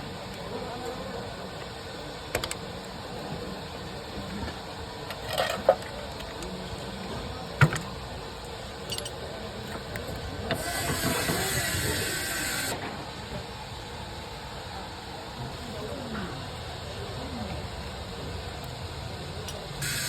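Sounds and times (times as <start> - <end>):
steady hiss: 19.5 - 20.0.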